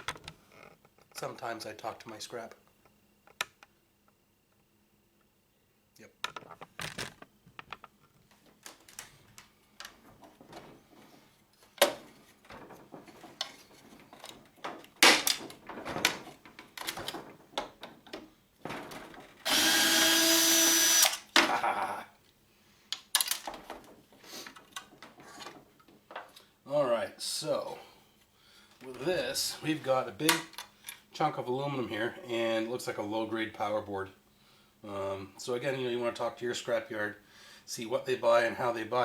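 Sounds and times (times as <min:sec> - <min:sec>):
power drill running: 0:19.4 - 0:21.3
metal parts clicking and clanking: 0:23.0 - 0:23.9.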